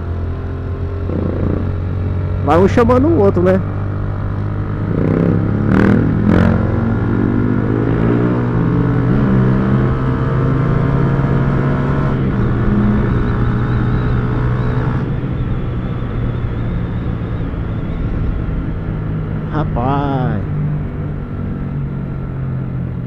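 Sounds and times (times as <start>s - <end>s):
motorcycle engine running: 0.0s - 7.7s.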